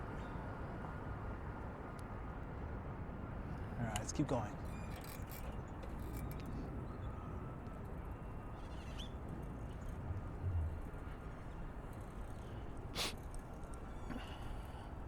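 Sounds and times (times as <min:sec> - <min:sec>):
low outdoor rumble: 0:07.5 - 0:15.0.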